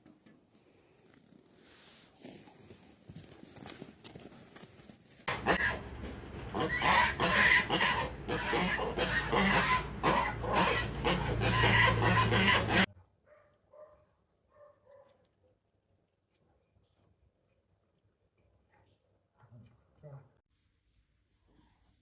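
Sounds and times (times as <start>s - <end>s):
animal calls: 5.3s - 12.9s.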